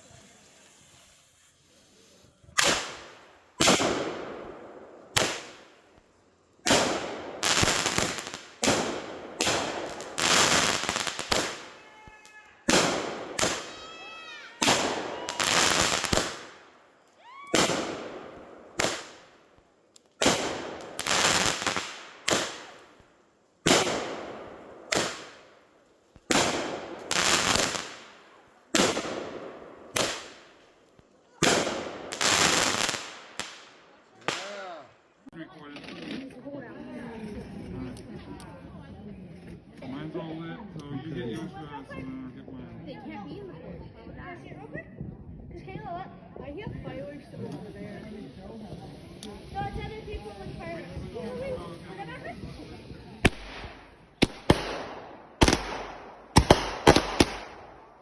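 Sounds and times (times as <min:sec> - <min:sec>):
firework whistling: 0:00.0 - 0:04.0, 0:12.6 - 0:16.6
firework shots banging: 0:02.6 - 0:05.9, 0:06.6 - 0:11.9, 0:12.6 - 0:14.0, 0:14.6 - 0:16.8, 0:17.5 - 0:19.4, 0:20.2 - 0:30.6, 0:31.4 - 0:34.6, 0:53.2 - 0:58.0.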